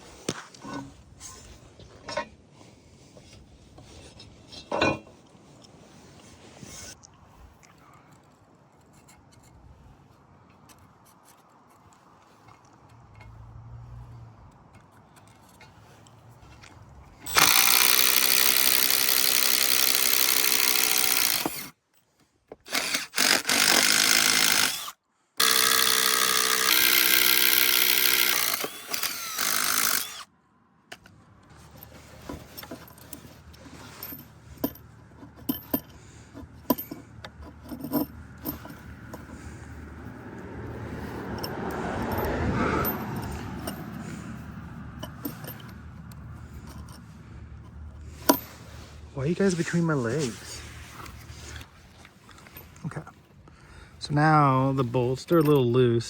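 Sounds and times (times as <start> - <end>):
power drill boring into wood: 17.3 - 21.7, 22.7 - 30.3.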